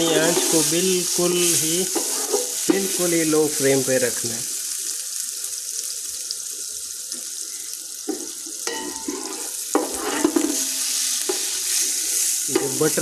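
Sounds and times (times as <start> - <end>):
butter sizzling in a pot: 0.0 - 13.0.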